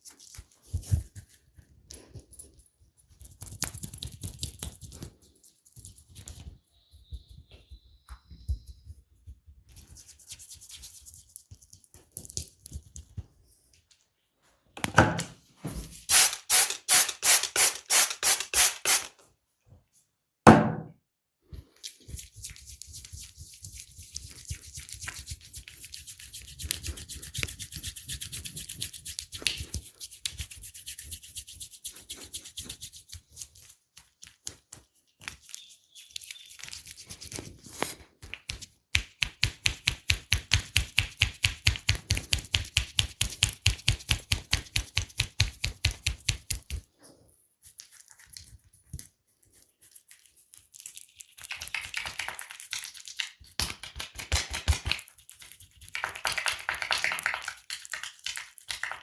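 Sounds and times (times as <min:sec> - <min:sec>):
hands patting skin: 0:03.2 - 0:06.5, 0:09.7 - 0:13.4, 0:21.8 - 0:46.9, 0:47.6 - 0:59.0
hands rubbing skin: 0:09.7 - 0:13.2, 0:21.8 - 0:46.9, 0:47.6 - 0:59.0.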